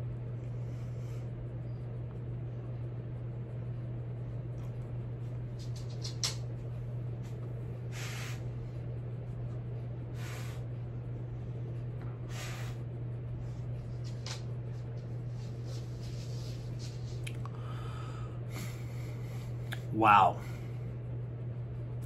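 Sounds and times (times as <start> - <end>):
steady low hum: 0.0 - 22.0
hissy sips through nose: 7.9 - 8.5.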